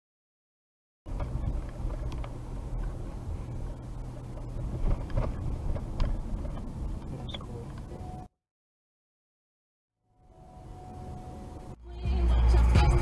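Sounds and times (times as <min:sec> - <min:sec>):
car road and engine rumble: 0:01.1 - 0:08.3, 0:10.2 - 0:13.0.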